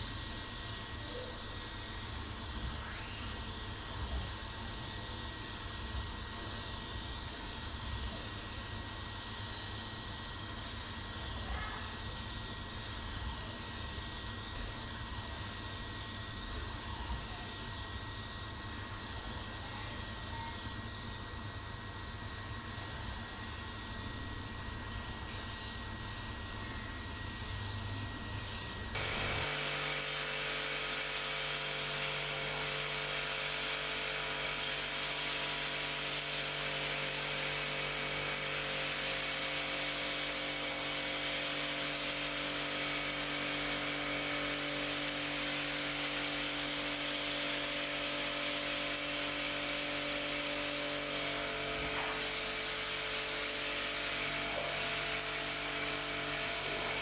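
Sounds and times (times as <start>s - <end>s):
machine hiss: 29.0s - 57.0s
machine motor hum: 29.0s - 57.0s.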